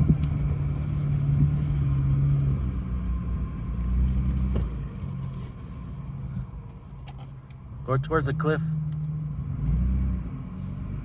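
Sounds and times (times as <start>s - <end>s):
off-road vehicle engine low revs: 7.8s - 11.0s.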